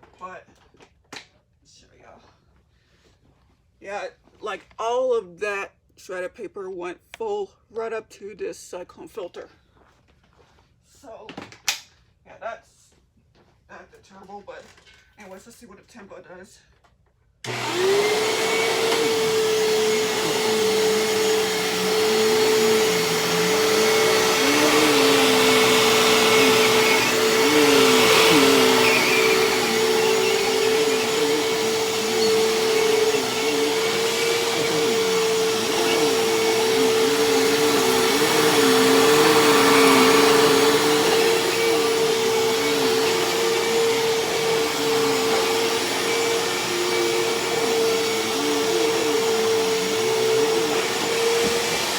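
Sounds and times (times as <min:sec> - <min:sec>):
vacuum cleaner running: 0:17.4 - 0:51.9.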